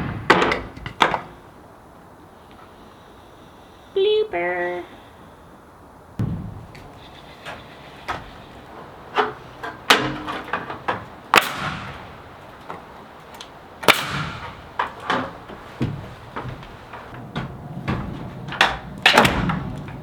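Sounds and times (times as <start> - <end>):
knocks and bangs from building work: 0.0 - 1.3, 6.2 - 8.5, 9.1 - 12.9, 13.8 - 20.0.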